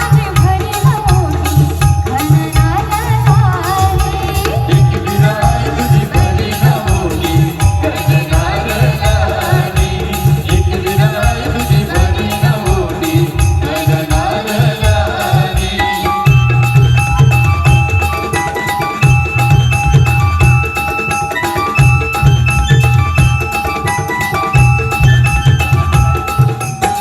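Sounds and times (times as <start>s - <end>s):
fast bass-heavy drum beat: 0.0s - 27.0s
wavering melody line: 0.0s - 27.0s.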